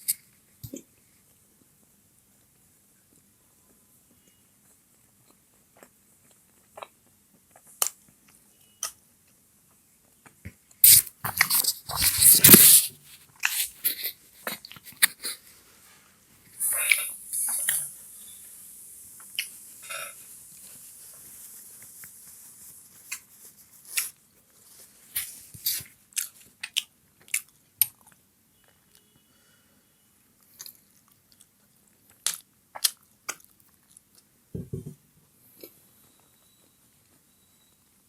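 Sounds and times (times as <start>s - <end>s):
short hiss: 10.8s - 14.2s.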